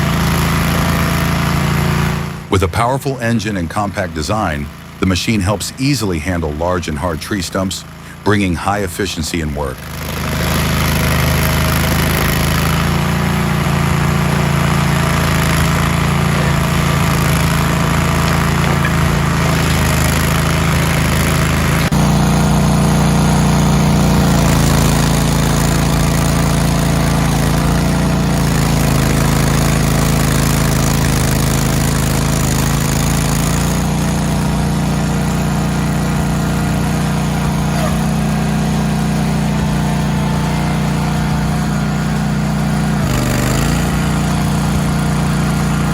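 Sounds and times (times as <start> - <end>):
stump grinder engine running: 0.0 - 45.9.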